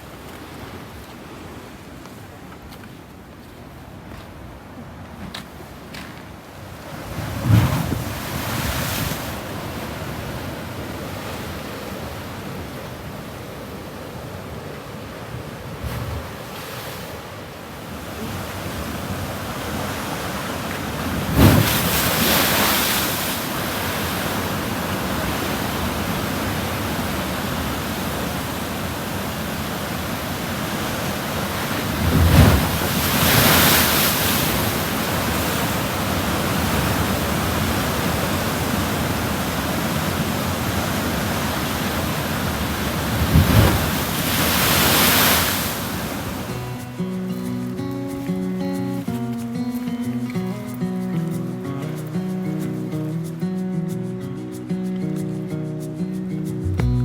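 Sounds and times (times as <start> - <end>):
heavy waves crashing: 4.6 - 57.0
ocean surf breaking: 6.7 - 56.9
wind buffeting microphone: 39.8 - 46.5.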